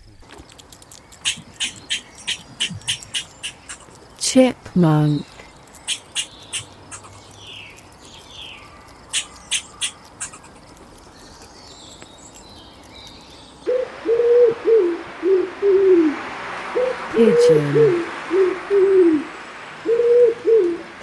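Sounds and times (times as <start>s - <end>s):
chipmunk chip calls: 0.3s - 21.0s
pigeon cooing: 13.7s - 21.0s.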